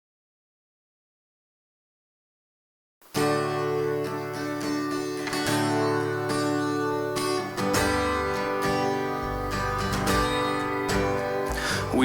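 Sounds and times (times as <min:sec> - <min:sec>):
strummed acoustic guitar: 0:03.1 - 0:12.0
sustained chords: 0:04.0 - 0:12.0.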